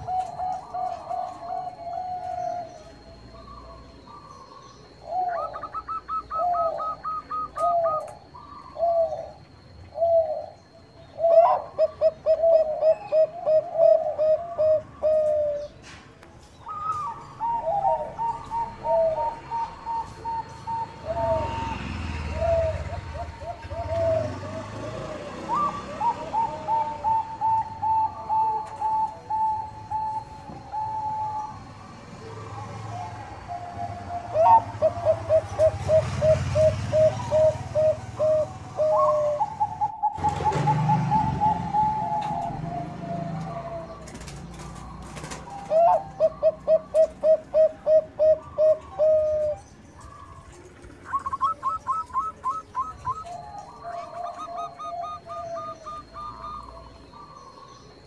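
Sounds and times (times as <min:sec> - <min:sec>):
doves cooing: 0:00.0 - 0:58.0.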